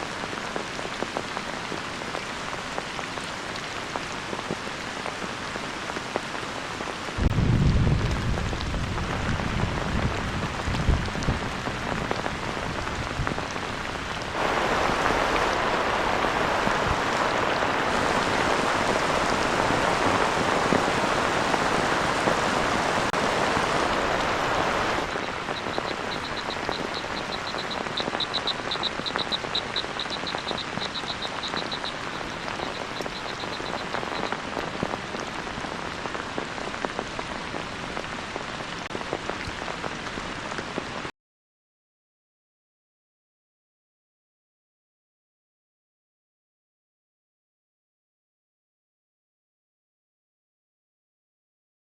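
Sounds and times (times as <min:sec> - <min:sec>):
heavy rain falling: 0:00.0 - 0:41.1.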